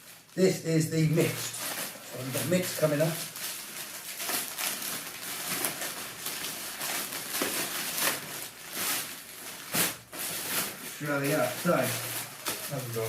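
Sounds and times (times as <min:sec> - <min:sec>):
packaging rustling and crinkling: 0:00.0 - 0:13.0.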